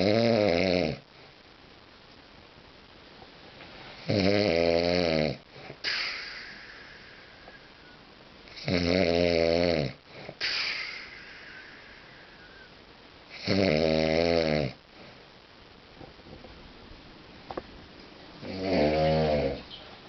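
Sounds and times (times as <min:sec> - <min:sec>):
man snoring loudly: 0:00.0 - 0:01.0, 0:04.0 - 0:05.4, 0:08.6 - 0:10.0, 0:13.3 - 0:14.8, 0:18.4 - 0:19.6
hissing breath out: 0:05.5 - 0:08.1, 0:10.1 - 0:12.8.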